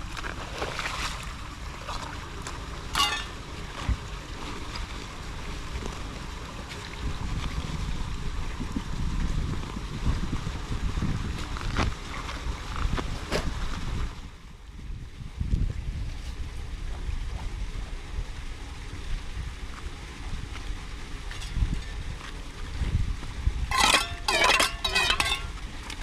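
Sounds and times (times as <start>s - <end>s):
wind buffeting microphone: 7.0s - 17.8s, 21.4s - 25.7s.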